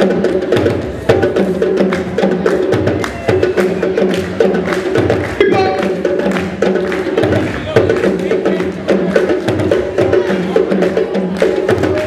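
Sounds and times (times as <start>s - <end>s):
upbeat dance music with percussion: 0.0s - 12.0s.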